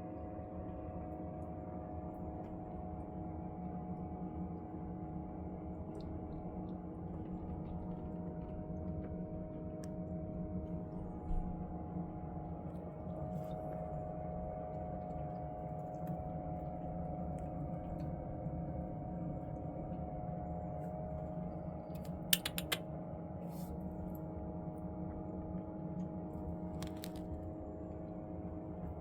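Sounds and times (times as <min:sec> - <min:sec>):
air cooler motor hum: 0:00.0 - 0:29.0
sharp clicks: 0:22.0 - 0:22.8.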